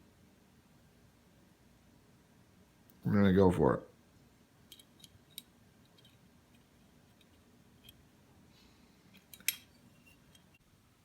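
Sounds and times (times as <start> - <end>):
small metal parts clicking: 4.7 - 8.0, 9.1 - 10.6.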